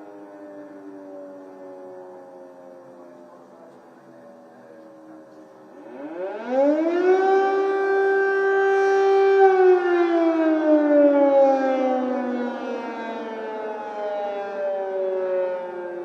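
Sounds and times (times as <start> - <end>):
air-raid siren wailing: 0.0 - 16.0.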